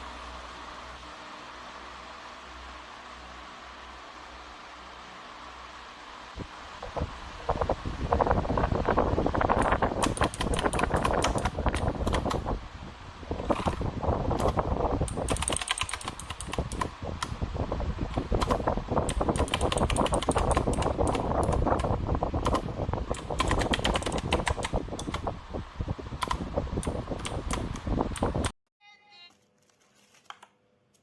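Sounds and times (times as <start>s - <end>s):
steady low hum: 0.0s - 28.6s
clicky keyboard typing: 9.5s - 12.4s, 13.5s - 17.3s, 18.1s - 25.3s, 26.2s - 28.5s.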